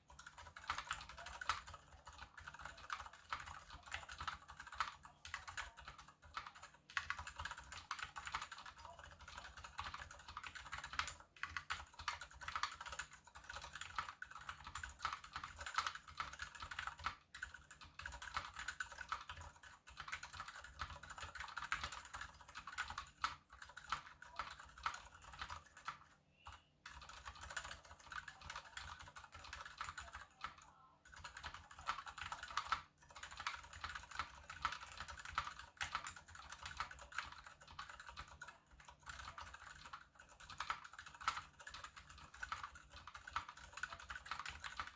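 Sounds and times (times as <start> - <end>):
typing on mechanical keyboard: 0.0 - 44.9.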